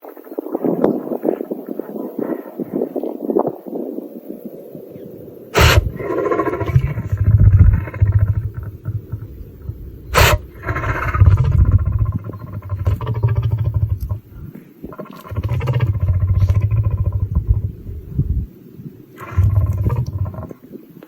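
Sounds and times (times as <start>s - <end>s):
lion nasal breath blast: 5.6s - 18.5s, 19.2s - 20.6s
lion low pulsing growl: 5.6s - 18.6s, 19.2s - 20.6s.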